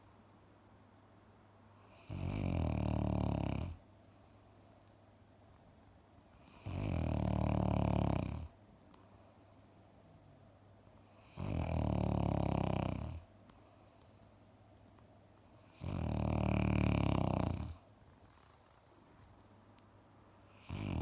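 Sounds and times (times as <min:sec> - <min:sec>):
dog snoring: 0:01.8 - 0:04.4, 0:06.4 - 0:10.0, 0:11.0 - 0:14.2, 0:15.5 - 0:18.9, 0:20.4 - 0:21.0.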